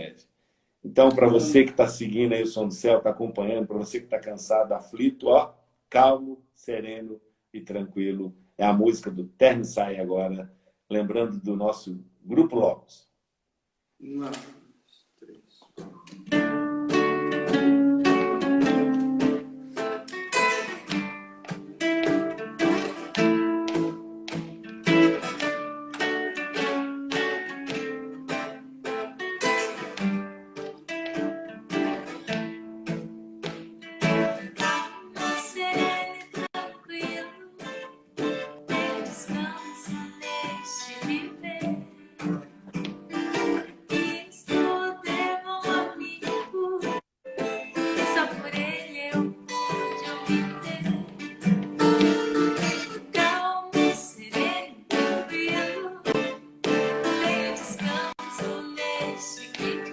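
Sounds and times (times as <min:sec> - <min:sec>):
acoustic guitar and plucked strings: 0:00.9 - 0:05.4, 0:15.7 - 0:59.9.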